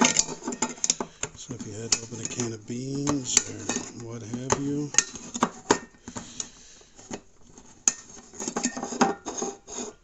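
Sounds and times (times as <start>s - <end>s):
can opener clicking and scraping: 0.0s - 5.8s.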